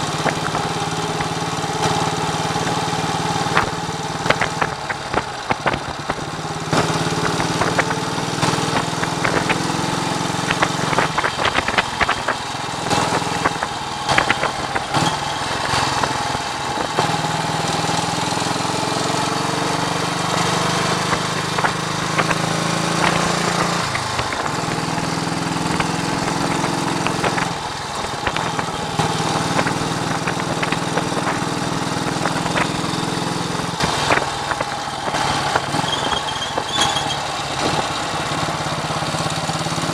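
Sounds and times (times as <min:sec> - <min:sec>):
motorcycle engine running: 0:00.0 - 0:39.9
wind buffeting microphone: 0:00.0 - 0:39.9.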